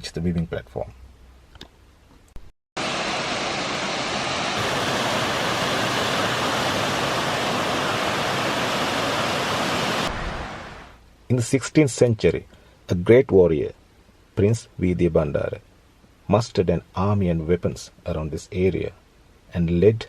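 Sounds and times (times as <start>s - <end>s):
waterfall rushing: 2.8s - 11.0s.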